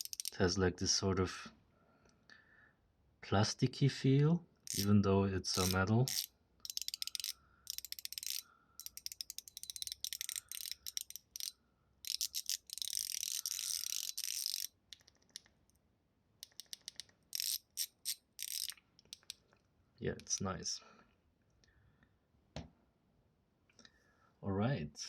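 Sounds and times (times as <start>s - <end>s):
fidget slider clicking: 0.0s - 0.4s, 4.7s - 15.5s, 16.4s - 19.4s, 20.2s - 20.4s.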